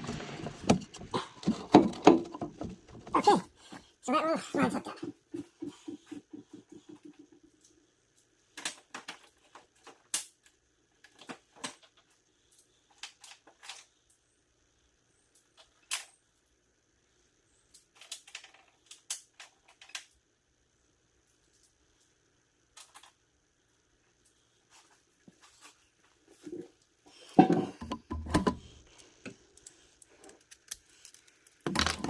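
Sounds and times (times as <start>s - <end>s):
tools and parts clicking and knocking: 0.1s - 3.2s, 27.3s - 32.0s.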